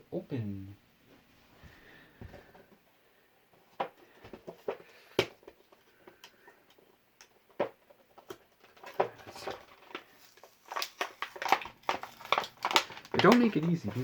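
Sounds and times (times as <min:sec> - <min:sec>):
hands opening cardboard packaging: 0:07.6 - 0:14.0.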